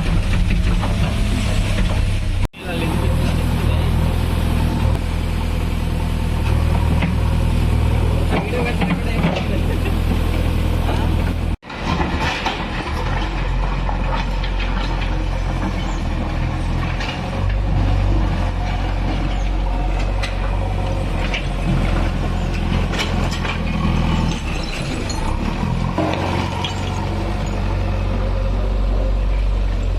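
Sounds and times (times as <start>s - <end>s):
machine clanks and rattles: 0.0s - 2.2s, 8.3s - 28.2s
backhoe diesel engine running: 0.0s - 29.9s.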